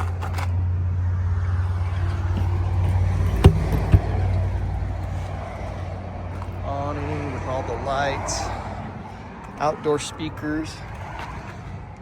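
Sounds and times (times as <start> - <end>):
engine idling hum: 0.0 - 12.0
sharp knocks: 2.4 - 4.5.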